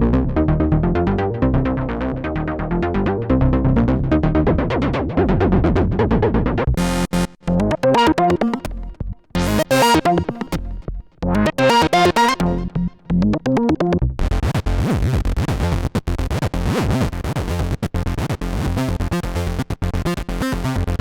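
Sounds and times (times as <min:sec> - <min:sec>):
synthesizer sequenced pattern: 0:00.0 - 0:14.1.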